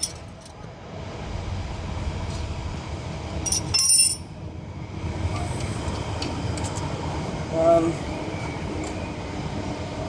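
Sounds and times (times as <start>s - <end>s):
metallic clinks of steel parts: 0.0s - 0.6s, 3.4s - 4.3s.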